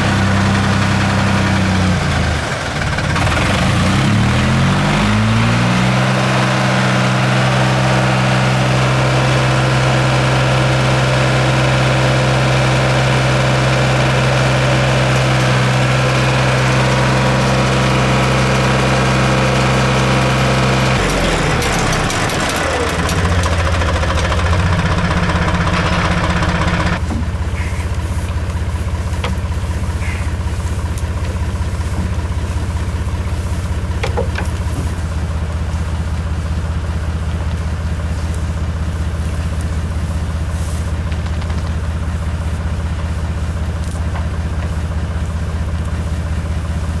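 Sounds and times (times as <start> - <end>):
motor idling hum: 7.3 - 47.0.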